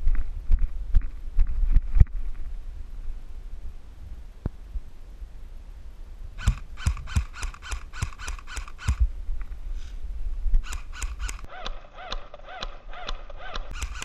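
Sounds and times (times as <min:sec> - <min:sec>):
bird calling rapidly: 0:10.6 - 0:14.0.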